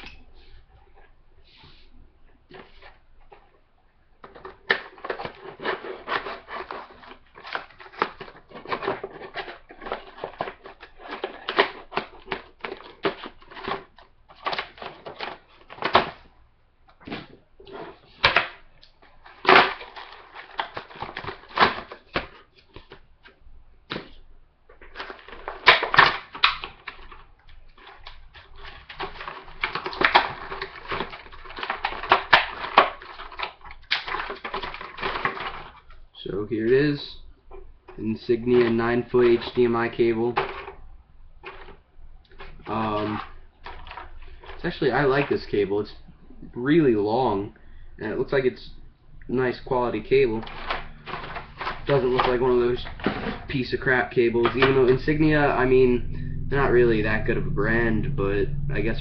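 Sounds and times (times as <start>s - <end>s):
cardboard packaging rustling and crinkling: 4.2s - 16.3s, 17.0s - 36.2s, 41.4s - 45.4s, 49.4s - 55.6s.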